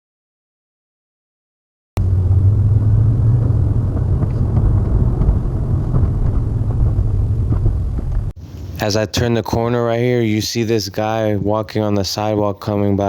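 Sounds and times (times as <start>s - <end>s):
car engine and road noise: 2.0s - 8.6s.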